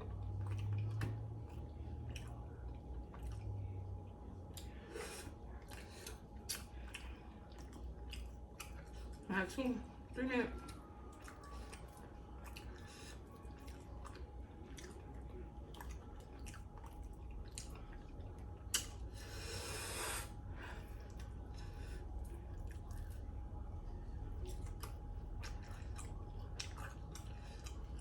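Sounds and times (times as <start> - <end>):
wet chewing: 0.0 - 9.3, 10.0 - 28.0.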